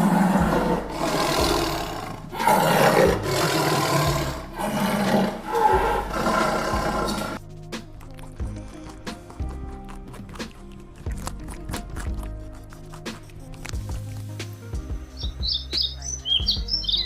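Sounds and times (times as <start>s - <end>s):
big cat roaring: 0.0s - 7.4s.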